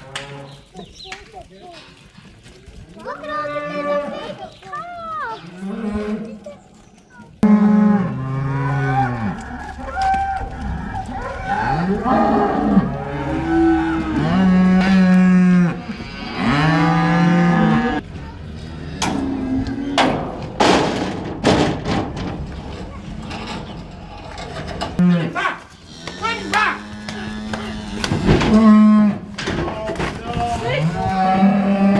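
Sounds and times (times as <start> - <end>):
cattle mooing: 7.4 - 18.0, 25.9 - 29.3, 30.7 - 31.9.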